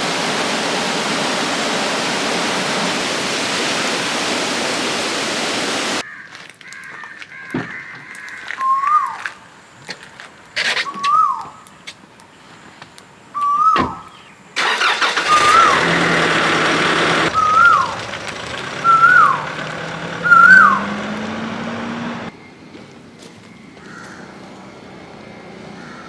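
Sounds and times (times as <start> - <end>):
vehicle engine running: 0.0 - 6.0, 14.6 - 22.9
whistled call: 8.6 - 9.2, 10.6 - 11.6, 13.4 - 16.1, 17.2 - 21.3.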